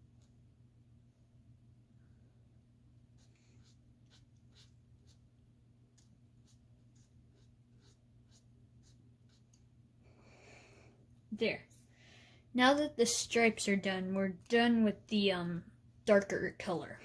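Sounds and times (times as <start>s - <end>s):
marker strokes on paper: 3.1s - 5.3s, 5.9s - 9.6s.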